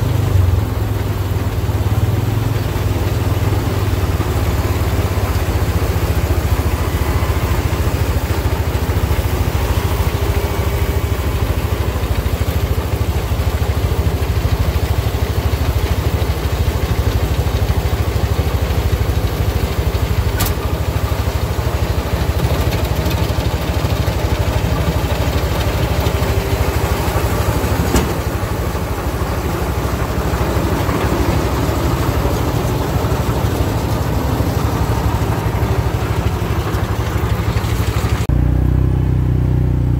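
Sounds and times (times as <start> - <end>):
engine idling: 0.0 - 39.9
sharp click: 20.4 - 20.6.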